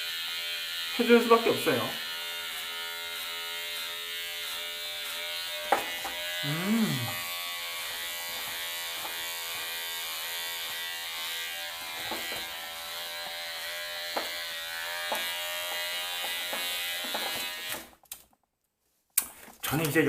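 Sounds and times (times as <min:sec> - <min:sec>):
electric hair clipper humming: 0:00.0 - 0:17.9.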